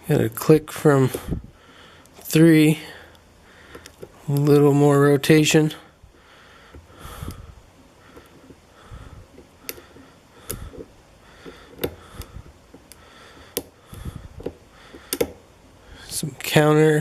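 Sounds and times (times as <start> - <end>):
lock pick scraping and clicking: 9.4 - 13.7, 14.4 - 15.4.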